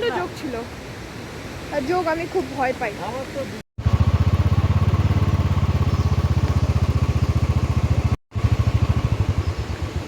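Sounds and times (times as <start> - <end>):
motorcycle engine running: 3.8 - 10.0.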